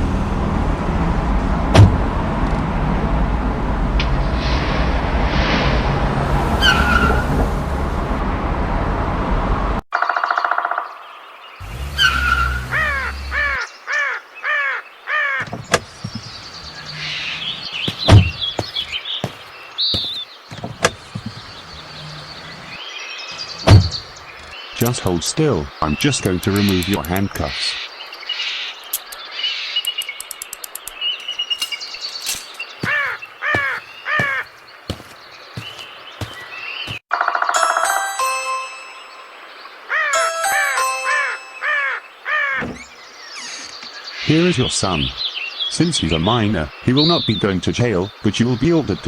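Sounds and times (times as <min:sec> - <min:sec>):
loud thump: 0:01.7 - 0:02.1, 0:18.0 - 0:18.8
small birds twittering: 0:10.0 - 0:37.0, 0:39.0 - 0:49.0
bird cawing: 0:12.0 - 0:20.2, 0:32.0 - 0:36.8, 0:41.6 - 0:44.3
crow cawing: 0:12.3 - 0:15.5, 0:32.8 - 0:34.6, 0:41.7 - 0:42.6
quick clicks: 0:28.9 - 0:29.2, 0:29.8 - 0:32.6.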